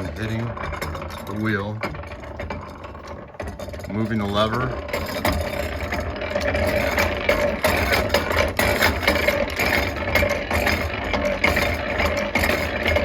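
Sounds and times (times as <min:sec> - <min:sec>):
hand-cranked drill clattering: 0:00.0 - 0:13.0.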